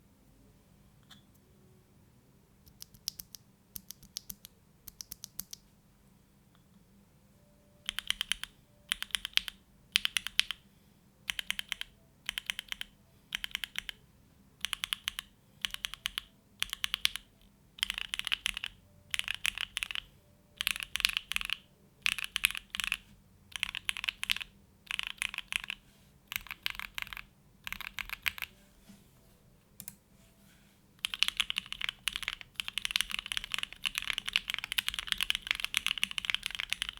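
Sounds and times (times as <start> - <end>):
mechanical keyboard typing: 2.7 - 5.6, 7.8 - 10.6, 11.3 - 14.0, 14.6 - 28.5, 31.0 - 36.9.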